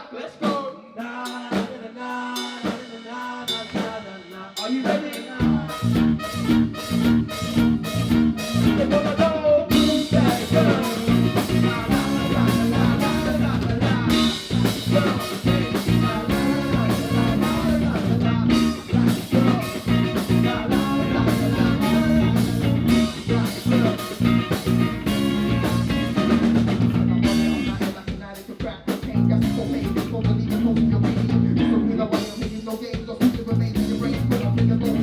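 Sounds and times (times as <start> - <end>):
live band playing: 0.6 - 31.4, 32.0 - 35.0.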